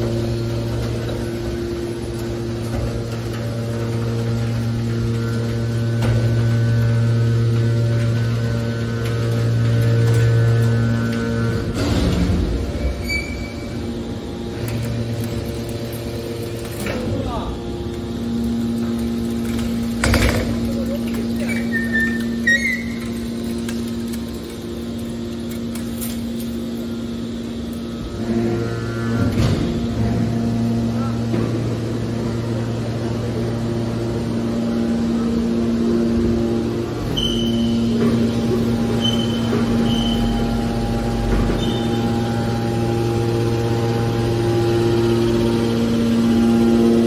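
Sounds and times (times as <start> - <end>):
deeper hum: 0.0 - 47.0
hydraulic power unit humming: 0.0 - 47.0
brief high squeaks: 37.1 - 37.8
brief squeal: 37.1 - 37.8, 39.0 - 40.4, 41.6 - 42.0.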